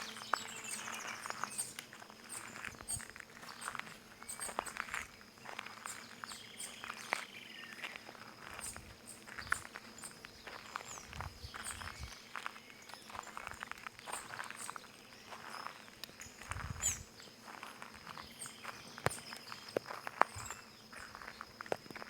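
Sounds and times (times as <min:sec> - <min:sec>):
birds chirping and whistling: 0:00.0 - 0:04.8, 0:08.6 - 0:17.3
footsteps crunching over stones: 0:00.0 - 0:22.0.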